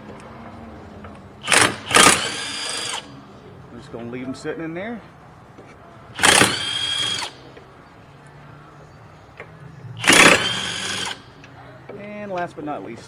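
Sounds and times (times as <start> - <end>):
impact wrench hitting and whining: 1.0 - 3.3, 6.1 - 7.6, 9.9 - 11.5.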